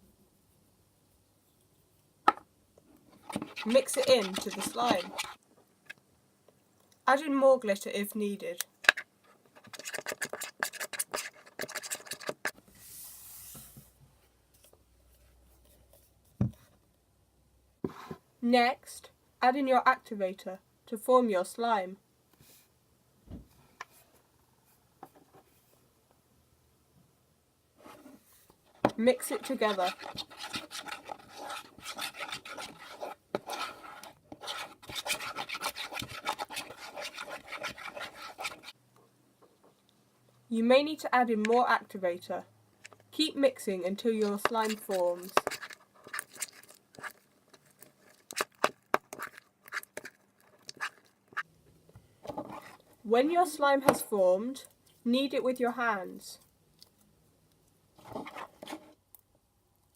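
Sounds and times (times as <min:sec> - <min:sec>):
spoon scraping slime in bowl: 0:03.1 - 0:05.4, 0:09.6 - 0:12.6, 0:28.8 - 0:38.8, 0:44.2 - 0:51.5, 0:52.4 - 0:52.8.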